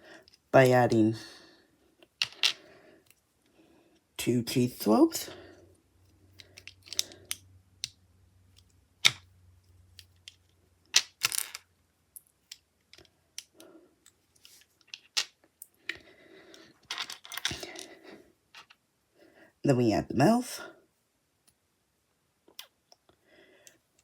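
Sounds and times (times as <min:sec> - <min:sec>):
plastic bricks clicking: 0:02.2 - 0:02.6, 0:06.4 - 0:08.0, 0:09.9 - 0:11.6, 0:16.9 - 0:17.9.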